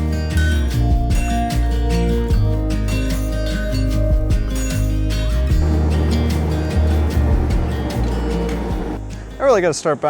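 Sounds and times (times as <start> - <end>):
music with heavy bass: 0.0 - 9.4.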